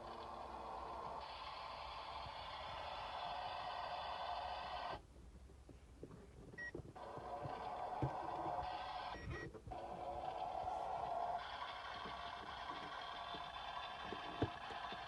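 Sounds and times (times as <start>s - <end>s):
toy stove electronic hiss: 0.0s - 5.0s.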